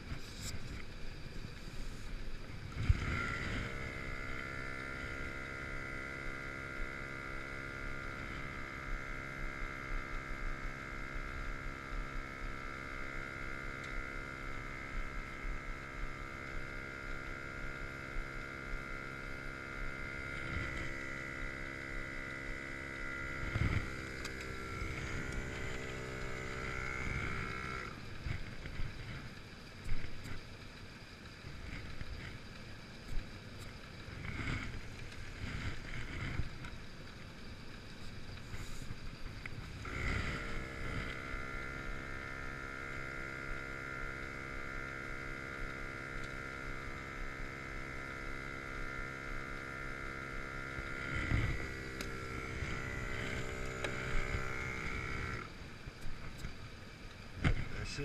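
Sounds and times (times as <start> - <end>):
air compressor running: 1.6 - 29.2, 33.6 - 37.3, 37.9 - 56.5.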